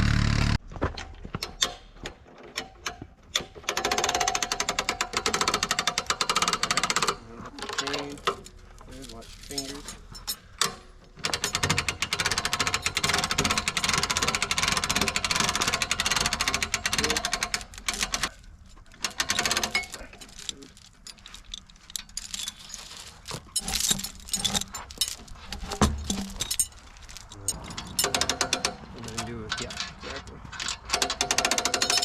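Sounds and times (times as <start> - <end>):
small motor running: 0.0 - 0.6
metal clinks and knocks: 0.9 - 32.0.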